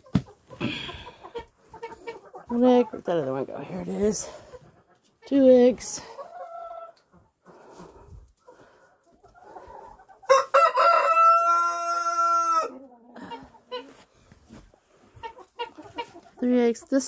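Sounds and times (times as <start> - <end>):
rooster crowing: 10.3 - 12.8.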